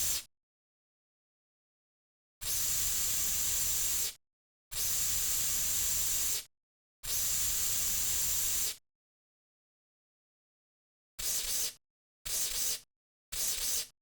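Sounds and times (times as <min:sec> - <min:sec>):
aerosol can spraying: 0:11.2 - 0:12.8, 0:13.4 - 0:13.9.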